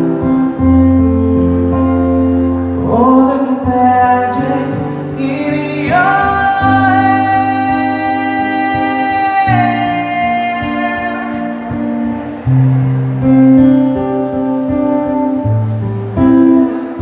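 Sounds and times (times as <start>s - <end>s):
acoustic guitar ballad: 0.0s - 17.0s.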